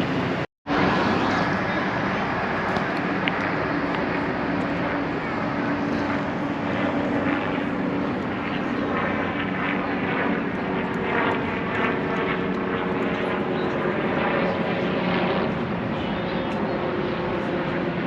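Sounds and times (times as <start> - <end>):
engine drone: 0.0 - 13.8
outdoor noise: 0.0 - 18.0.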